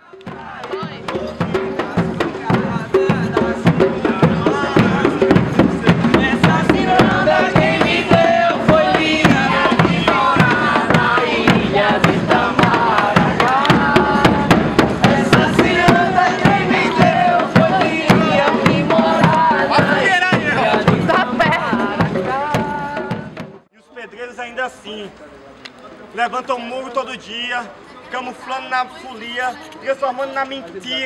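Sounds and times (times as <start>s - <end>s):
voices singing: 0.0s - 28.6s
fast drum beat: 0.3s - 23.7s.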